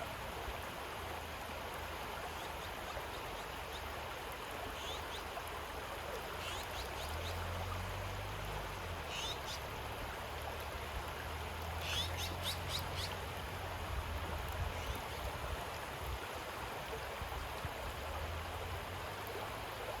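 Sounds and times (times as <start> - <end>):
river running over pebbles: 0.0 - 20.0
songbird chirping: 4.8 - 5.3, 6.4 - 7.8, 9.1 - 9.7, 11.8 - 13.2.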